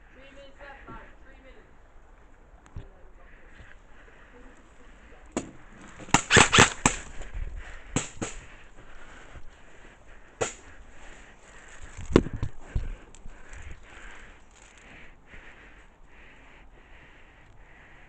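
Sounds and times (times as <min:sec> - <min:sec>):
airsoft guns firing: 0:05.4 - 0:07.1, 0:10.4 - 0:10.7.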